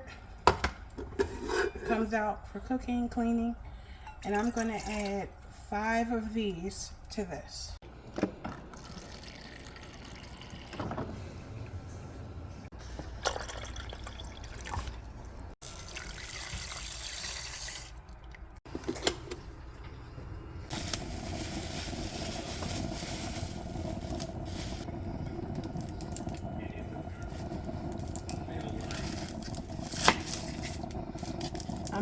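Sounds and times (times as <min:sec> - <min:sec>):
tap water running into a pot: 0:15.6 - 0:18.0, 0:20.7 - 0:32.0.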